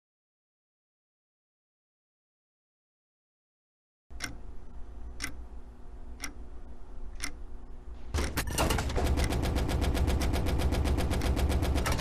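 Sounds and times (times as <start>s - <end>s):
clock ticking: 4.1s - 7.6s, 8.2s - 12.0s
fast clockwork clatter: 8.2s - 12.0s.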